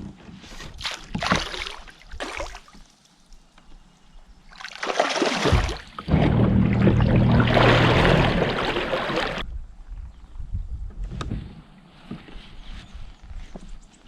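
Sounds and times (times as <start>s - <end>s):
water splashes and kayak knocks: 0.7s - 2.8s, 4.8s - 9.4s
water rushing along hull: 4.7s - 9.4s
electric trolling motor hum: 6.1s - 8.9s.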